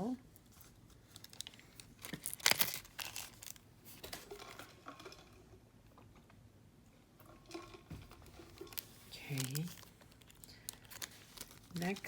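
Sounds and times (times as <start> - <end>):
plastic bags crinkling: 0.5 - 5.2, 7.5 - 12.0.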